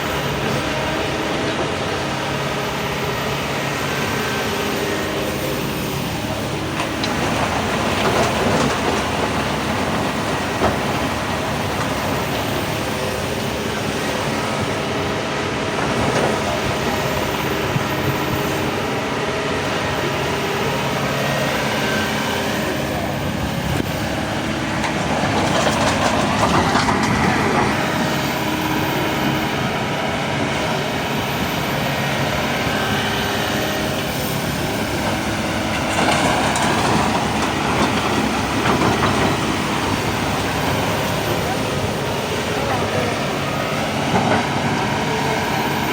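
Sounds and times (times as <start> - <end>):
diesel engine running: 0.0 - 45.9
continuous metallic rattle: 22.8 - 28.2.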